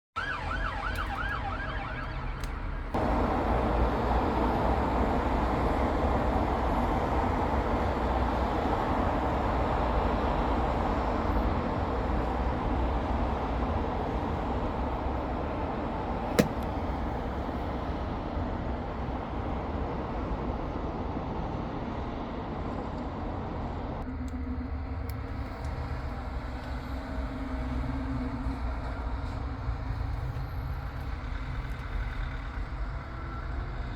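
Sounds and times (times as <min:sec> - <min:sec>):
siren yelping: 0:00.2 - 0:02.4
engine hum: 0:00.2 - 0:20.8
passing traffic: 0:00.2 - 0:33.9.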